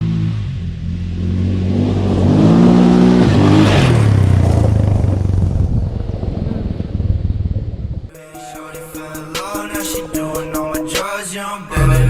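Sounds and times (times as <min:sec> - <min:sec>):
quad engine revving: 0:00.0 - 0:07.5.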